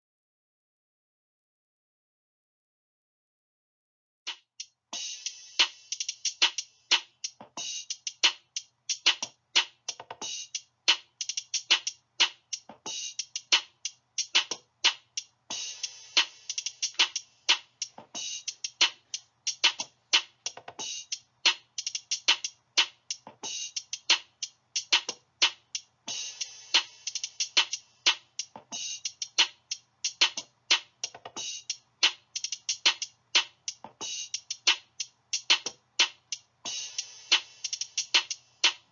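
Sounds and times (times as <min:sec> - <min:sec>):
electronic percussive beat: 0:05.0 - 0:38.9.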